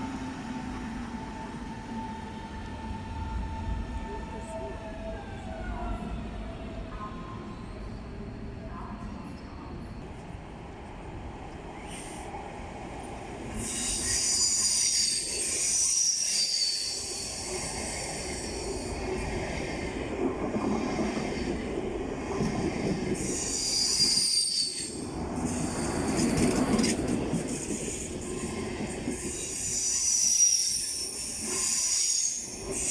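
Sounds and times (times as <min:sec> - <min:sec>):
train wheels rumbling on rails: 0:08.9 - 0:32.9
high-pitched wheel squeal: 0:13.6 - 0:18.9, 0:23.3 - 0:25.0, 0:28.4 - 0:32.9.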